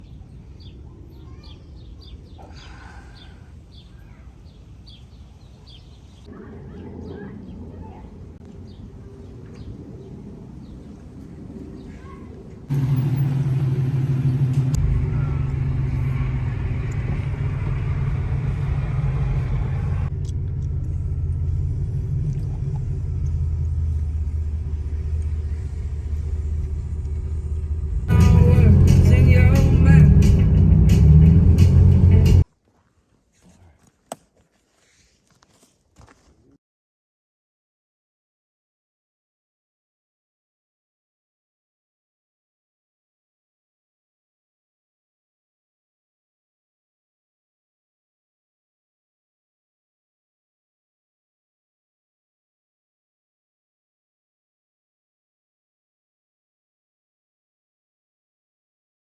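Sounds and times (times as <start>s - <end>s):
vehicle engine rumbling: 6.5s - 32.5s.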